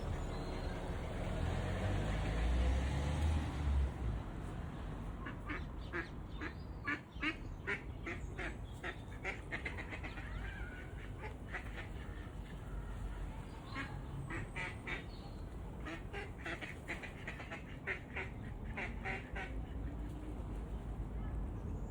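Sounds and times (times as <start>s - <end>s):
duck quacking: 15.8s - 19.5s.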